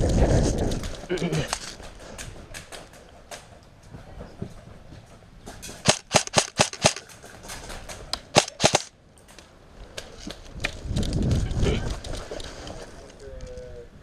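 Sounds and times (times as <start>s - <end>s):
airsoft gun shots: 5.8s - 7.0s, 8.3s - 8.9s.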